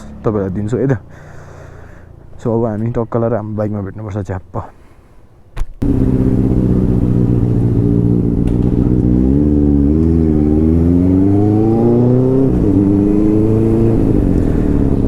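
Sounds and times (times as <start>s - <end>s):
motorcycle engine revving: 5.8s - 15.0s.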